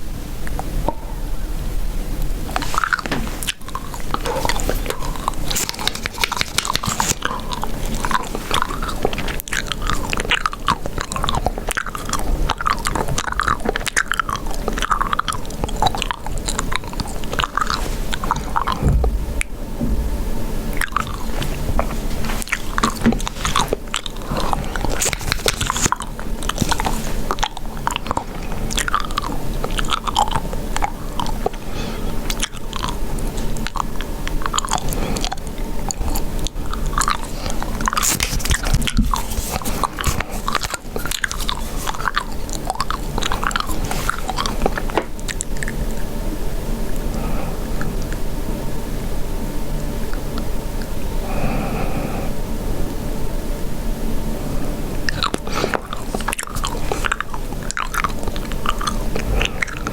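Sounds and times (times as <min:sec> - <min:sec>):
gum chewing mouth clicks: 0:02.5 - 0:19.6, 0:20.7 - 0:46.0, 0:55.0 - 0:59.9.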